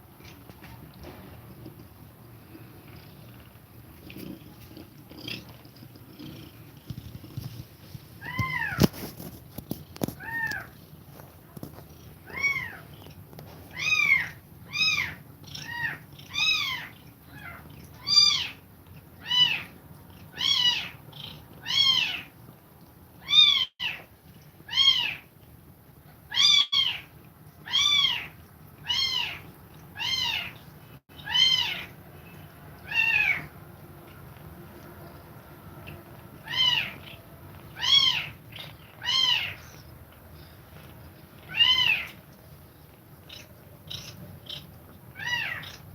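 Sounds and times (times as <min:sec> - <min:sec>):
kitten meowing: 0:31.2 - 0:31.9, 0:36.4 - 0:37.2, 0:37.8 - 0:39.7, 0:41.5 - 0:42.2, 0:45.2 - 0:45.8.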